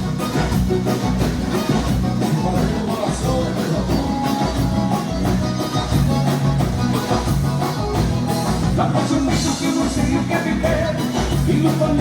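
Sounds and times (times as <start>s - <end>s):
live dance band playing: 0.0s - 12.0s.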